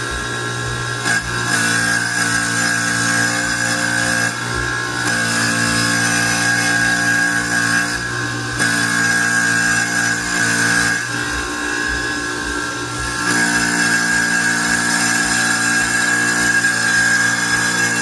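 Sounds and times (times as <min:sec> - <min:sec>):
mechanical whine: 0:00.0 - 0:18.0.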